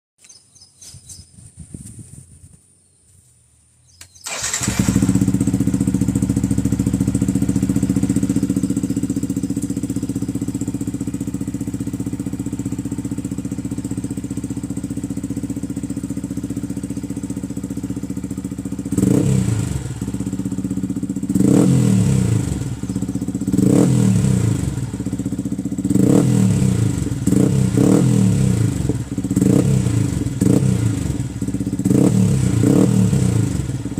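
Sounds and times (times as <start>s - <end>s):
motorcycle engine idling: 4.1s - 33.9s
motorcycle throttle revs: 4.1s - 33.9s.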